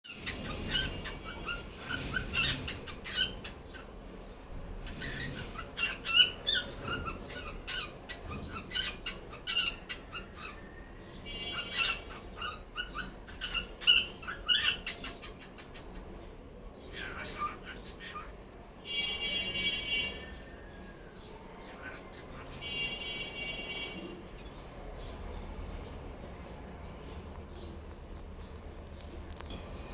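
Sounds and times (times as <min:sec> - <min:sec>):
cockatiel chirping and squawking: 0:00.1 - 0:04.0, 0:04.8 - 0:16.0, 0:16.9 - 0:18.3.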